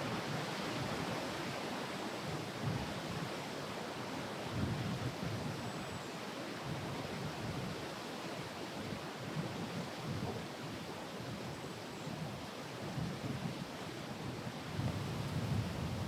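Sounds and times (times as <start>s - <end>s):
wind buffeting microphone: 14.3s - 16.0s.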